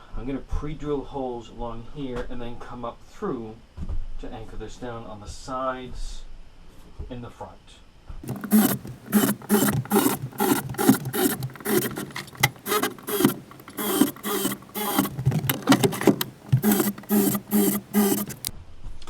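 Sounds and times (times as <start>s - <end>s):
power drill drilling wood: 8.2s - 18.5s.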